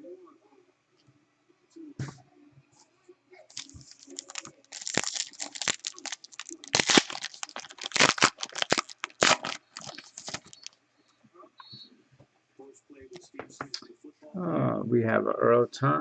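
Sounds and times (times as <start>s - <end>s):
card pack wrapper crinkling: 3.5s - 10.7s.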